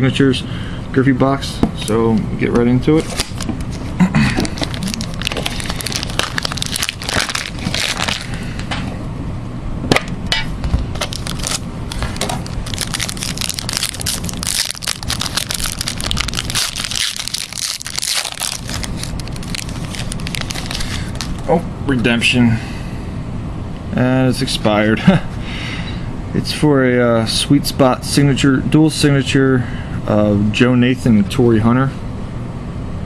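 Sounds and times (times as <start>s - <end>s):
plastic wrapping crinkling and tearing: 4.4s - 8.7s, 10.9s - 21.5s.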